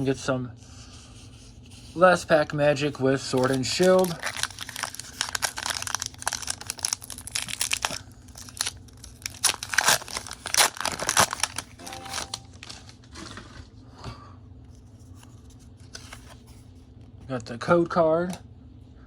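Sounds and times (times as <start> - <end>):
foil wrapper tearing and crinkling: 3.0 - 13.6.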